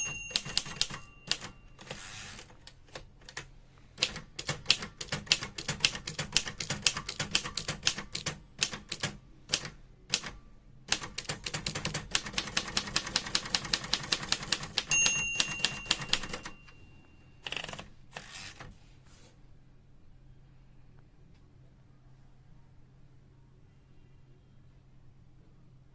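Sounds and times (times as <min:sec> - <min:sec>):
typewriter key strikes: 0:00.0 - 0:02.2, 0:04.0 - 0:16.7
typewriter margin bell ringing: 0:00.0 - 0:02.5, 0:14.0 - 0:18.4
typewriter carriage return rattle: 0:00.0 - 0:03.4, 0:10.9 - 0:16.6, 0:17.4 - 0:18.7.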